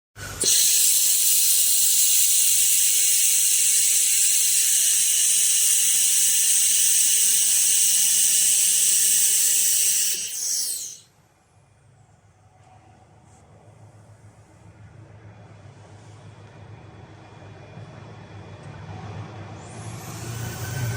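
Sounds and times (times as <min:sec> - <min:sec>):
laser welding hiss: 0:00.4 - 0:11.0.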